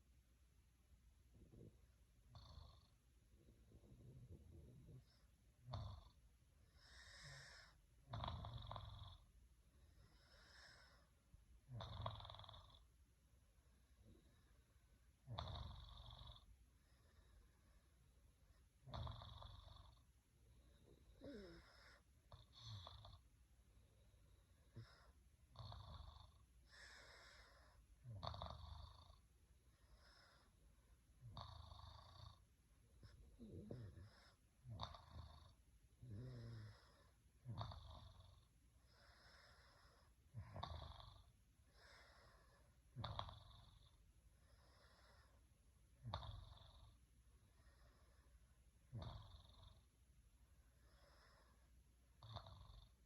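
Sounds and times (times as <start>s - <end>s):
faint snoring: 1.3s - 13.0s, 13.6s - 50.0s, 50.6s - 53.0s
breathing in and out: 1.4s - 7.9s, 9.7s - 11.2s, 16.7s - 19.0s, 26.3s - 28.9s, 29.6s - 32.2s, 32.9s - 40.9s, 41.6s - 43.0s, 44.3s - 45.6s, 47.3s - 49.0s, 50.6s - 51.8s
person snoring: 6.8s - 9.2s, 15.3s - 16.5s, 20.8s - 23.2s, 24.6s - 29.2s, 31.2s - 32.4s, 33.0s - 43.9s
soft airy breath: 26.6s - 27.9s, 38.8s - 40.5s, 41.6s - 42.9s, 47.4s - 48.6s, 50.6s - 51.8s.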